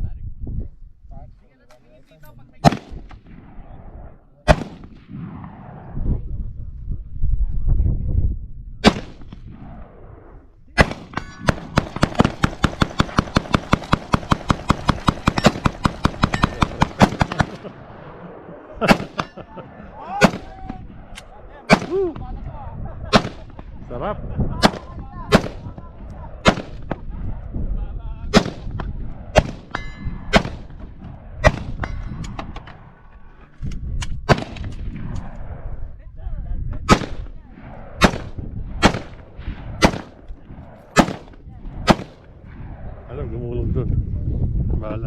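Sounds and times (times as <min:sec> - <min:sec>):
gunshots: 0:02.6 - 0:03.8, 0:04.4 - 0:06.0, 0:08.8 - 0:22.3, 0:23.0 - 0:23.8, 0:24.5 - 0:27.4, 0:28.3 - 0:33.0, 0:34.2 - 0:35.8, 0:36.8 - 0:43.1.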